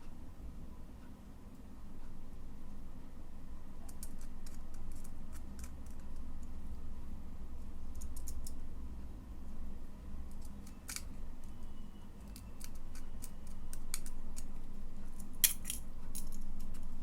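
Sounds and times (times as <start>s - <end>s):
steady low hum: 0.0s - 17.0s
small parts clicking and snipping: 3.8s - 6.6s, 7.8s - 8.6s, 10.2s - 17.0s.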